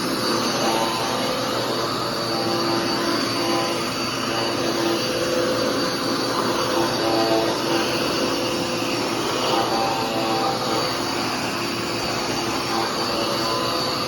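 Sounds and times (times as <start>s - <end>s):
upright vacuum cleaner running: 0.0s - 14.0s.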